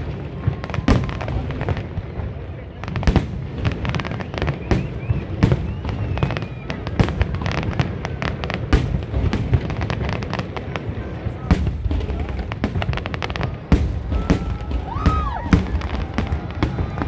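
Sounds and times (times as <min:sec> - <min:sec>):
fireworks bangs and crackles: 0:00.0 - 0:17.0
faint firework whistles: 0:02.8 - 0:07.9.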